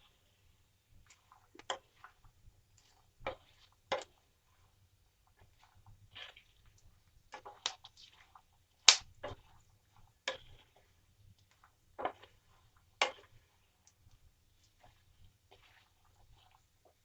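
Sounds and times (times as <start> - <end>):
nuts crackling in a pan: 6.2 - 9.4.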